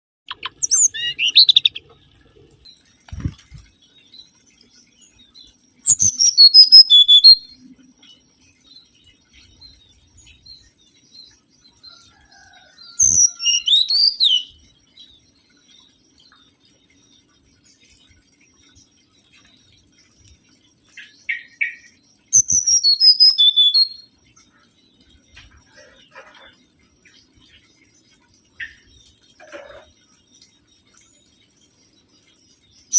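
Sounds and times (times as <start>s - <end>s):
bird singing whistled phrases: 0.3s - 1.7s, 5.9s - 7.5s, 13.0s - 14.5s, 22.4s - 24.0s.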